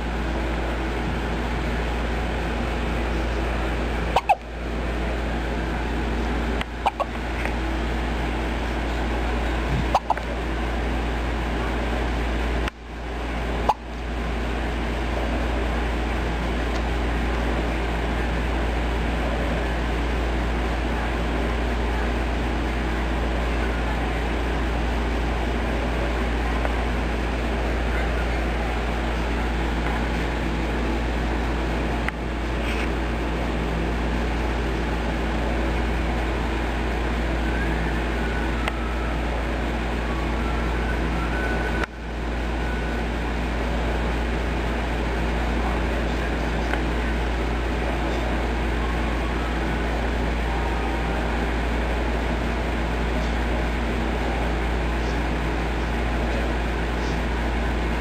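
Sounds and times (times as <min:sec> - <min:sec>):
background hum and hiss: 0:00.0 - 0:58.0
person hiccuping: 0:04.1 - 0:04.4, 0:06.8 - 0:07.2.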